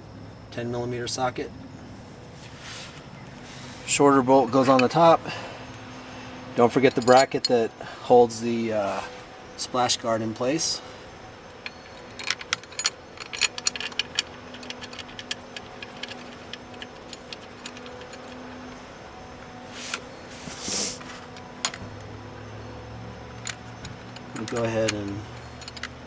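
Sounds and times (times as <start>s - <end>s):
low steady hum: 0.0s - 26.0s
socket ratchet clicking: 11.5s - 19.0s, 23.2s - 26.0s.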